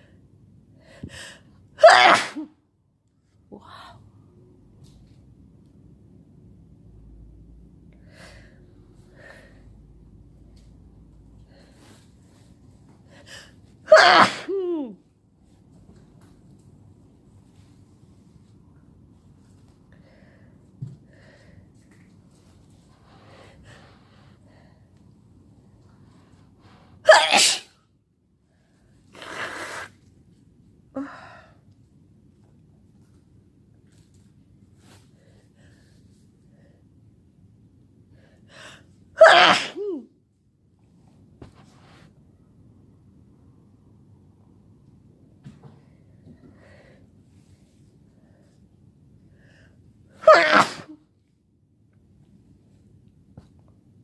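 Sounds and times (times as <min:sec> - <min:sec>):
person sneezing: 0:01.8 - 0:02.5, 0:13.9 - 0:14.9, 0:27.0 - 0:27.8, 0:39.2 - 0:40.1, 0:50.2 - 0:51.0.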